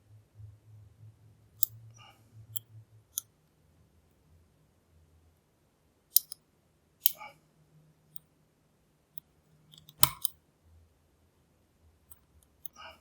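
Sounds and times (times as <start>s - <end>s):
metallic clicks of lock picking: 6.1s - 6.4s, 9.2s - 10.4s.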